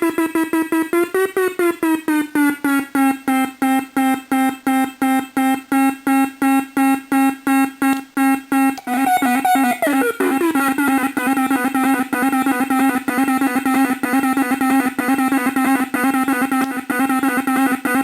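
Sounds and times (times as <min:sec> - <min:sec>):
buzzy electronic beeps: 0:08.2 - 0:18.0
higher tone sliding down: 0:08.8 - 0:10.9.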